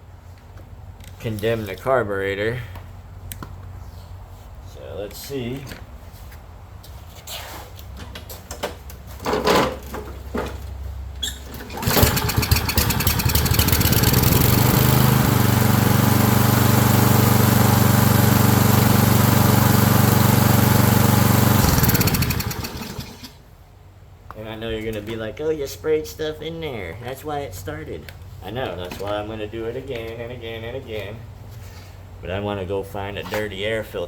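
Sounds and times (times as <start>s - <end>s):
lawn mower engine running: 11.4s - 23.4s
pull-start cord pulls: 11.5s - 15.2s, 21.3s - 23.3s.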